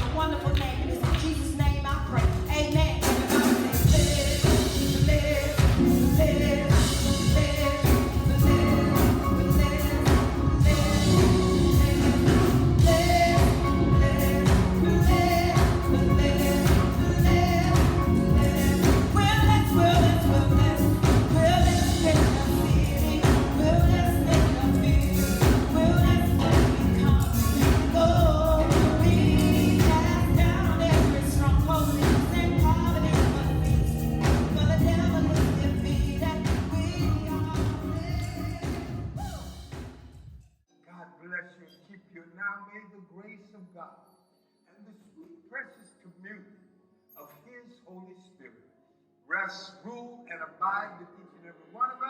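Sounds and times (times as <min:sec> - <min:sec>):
gospel singing with band: 0:00.0 - 0:39.8
steady drum beat: 0:00.0 - 0:40.0.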